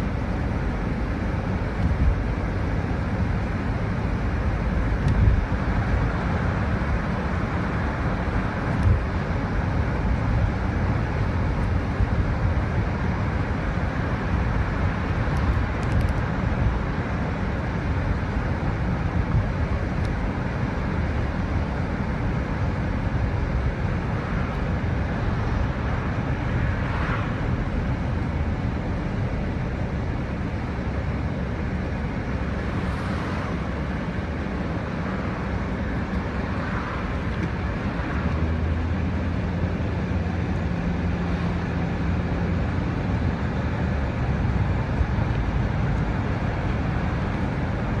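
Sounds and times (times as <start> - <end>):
car engine and tyre rumble: 0.0 - 48.0
wind noise: 1.4 - 2.6, 3.9 - 17.5.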